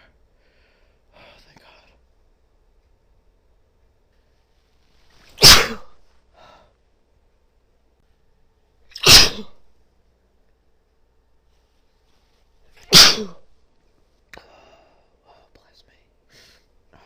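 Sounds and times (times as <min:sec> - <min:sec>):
breath: 0:00.3 - 0:01.4, 0:06.3 - 0:06.8, 0:14.4 - 0:15.2, 0:16.3 - 0:17.0
woman sneezing: 0:05.4 - 0:06.0, 0:08.9 - 0:09.6, 0:12.8 - 0:13.4.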